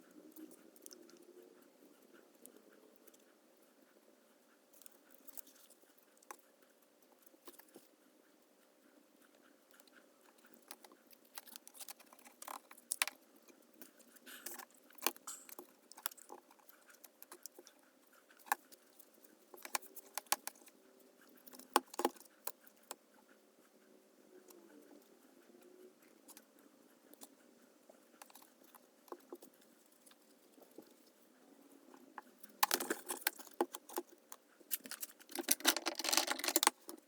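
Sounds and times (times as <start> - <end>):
objects clicking and rattling: 32.6 - 34.0, 34.7 - 37.0.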